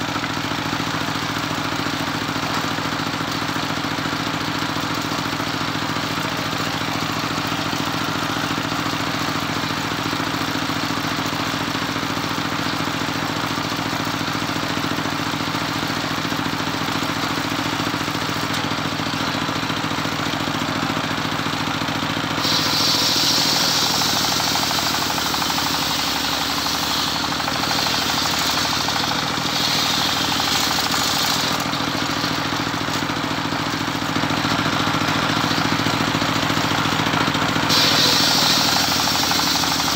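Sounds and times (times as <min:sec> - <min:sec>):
sawmill engine running: 0:00.0 - 0:39.9
saw blade rasping through log: 0:22.4 - 0:32.6, 0:37.7 - 0:39.9.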